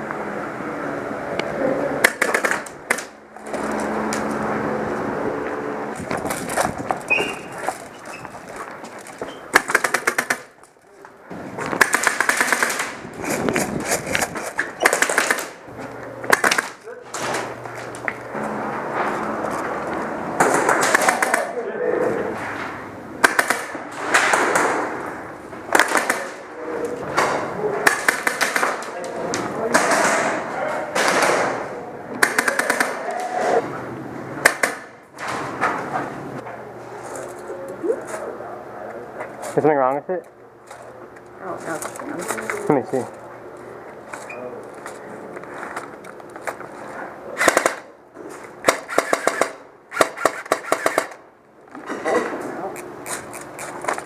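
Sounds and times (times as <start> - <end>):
noisy arena background: 0.0 - 54.0
airsoft guns firing: 2.0 - 3.2, 9.5 - 10.6, 11.6 - 15.6, 16.2 - 17.5, 20.4 - 21.6, 23.2 - 25.0, 25.7 - 26.5, 27.2 - 29.0, 29.7 - 31.6, 32.2 - 33.2, 34.4 - 34.9, 47.4 - 47.9, 48.6 - 51.2.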